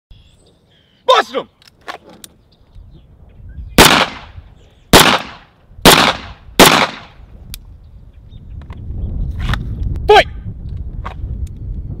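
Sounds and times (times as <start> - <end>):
pistol shots with echo: 3.8 - 7.2.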